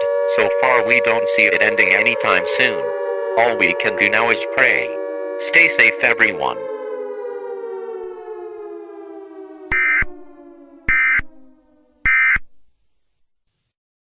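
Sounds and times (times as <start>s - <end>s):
electronic drone sliding down: 0.0s - 12.1s
shrill data bursts: 3.4s - 6.4s, 9.7s - 10.1s.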